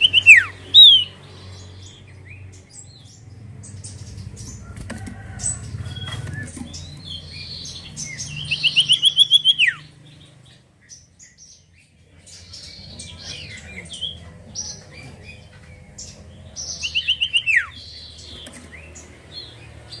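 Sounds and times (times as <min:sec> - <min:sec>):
bird singing: 0:00.0 - 0:20.0.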